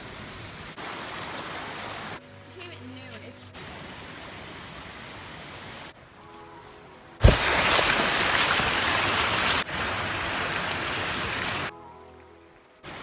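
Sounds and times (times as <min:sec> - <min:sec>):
rushing water roar: 0:00.0 - 0:02.2, 0:07.2 - 0:11.7.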